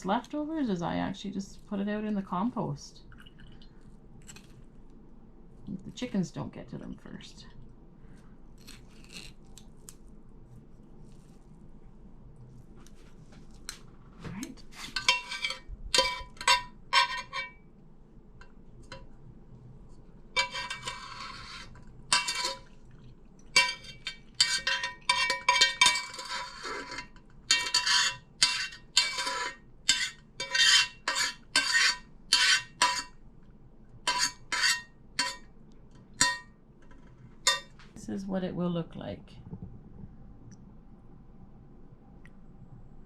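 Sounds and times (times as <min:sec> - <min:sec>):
spoon scraping a metal strainer: 0:14.7 - 0:17.6, 0:20.4 - 0:22.8, 0:23.6 - 0:33.1, 0:34.1 - 0:35.4.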